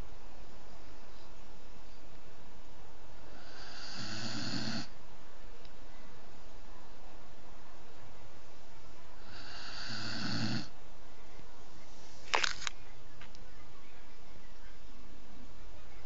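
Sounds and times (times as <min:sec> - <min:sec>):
steady hiss: 0:00.0 - 0:06.7, 0:08.5 - 0:10.8
person snoring: 0:03.3 - 0:04.9, 0:09.2 - 0:10.7.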